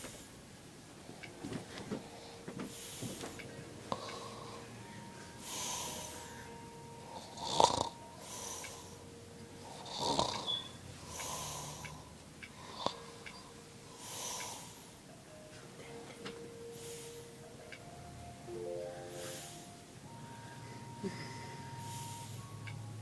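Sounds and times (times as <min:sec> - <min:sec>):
man snoring: 0:05.4 - 0:06.3, 0:07.1 - 0:09.0, 0:09.6 - 0:10.5, 0:11.1 - 0:13.0.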